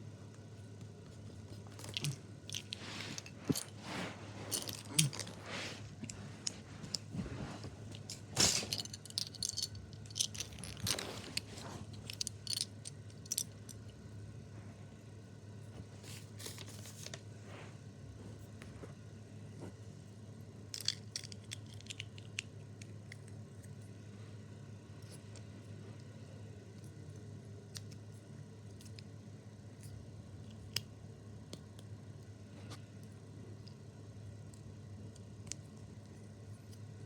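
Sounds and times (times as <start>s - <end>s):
steady low hum: 0.0s - 37.0s
plastic pieces clicking and rattling: 8.1s - 11.4s, 12.0s - 13.8s, 20.7s - 22.5s.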